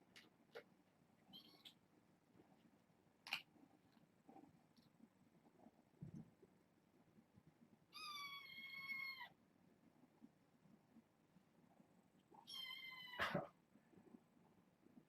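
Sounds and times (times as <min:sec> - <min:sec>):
kitten meowing: 0:07.9 - 0:09.3, 0:12.4 - 0:13.3.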